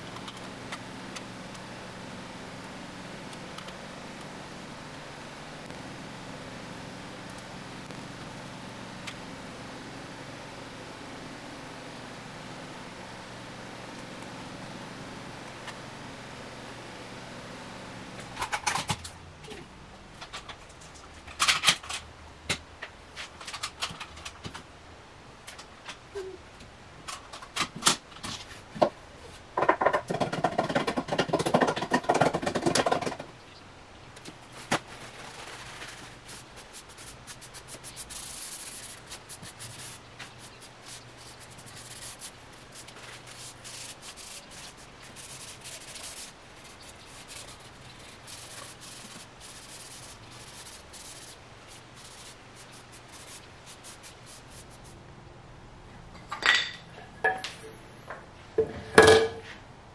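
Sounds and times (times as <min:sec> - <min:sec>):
sanding wood by hand: 0:36.0 - 0:54.9.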